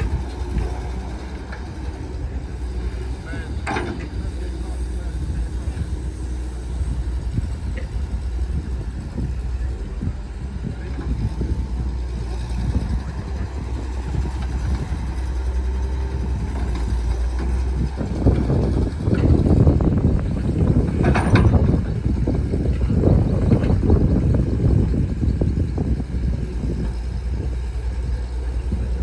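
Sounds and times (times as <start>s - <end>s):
diesel engine rumbling: 0.0s - 29.0s
machine rattles and knocks: 3.3s - 4.5s, 16.2s - 25.0s.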